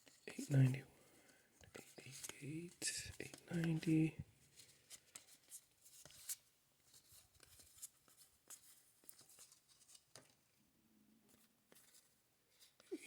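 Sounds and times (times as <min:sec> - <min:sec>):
cardboard cards handled: 0:01.7 - 0:10.4.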